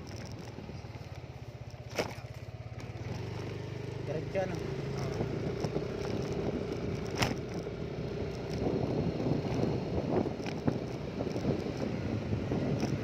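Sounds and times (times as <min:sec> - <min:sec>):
wind buffeting microphone: 0:00.0 - 0:01.2, 0:04.4 - 0:13.0.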